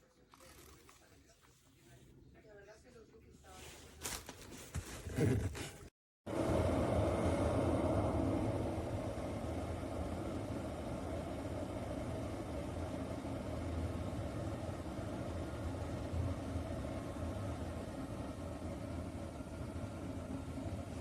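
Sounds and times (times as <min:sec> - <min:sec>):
electric kettle heating water: 0:06.3 - 0:21.0.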